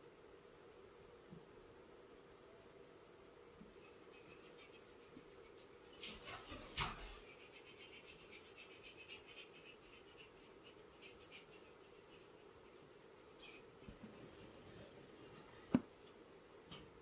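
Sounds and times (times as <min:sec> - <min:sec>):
scratchy rubbing over skin and hair: 0:03.8 - 0:15.5.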